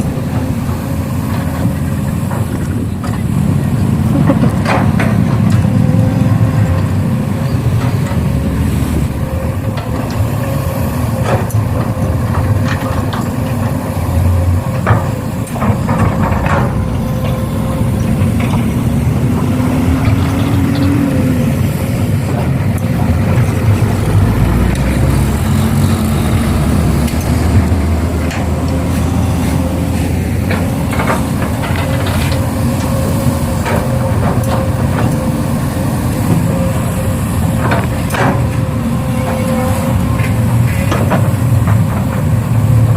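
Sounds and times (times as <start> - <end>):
diesel engine rumble: 0.0 - 42.9
machinery knocks: 11.2 - 21.0
rising whine: 13.2 - 35.9.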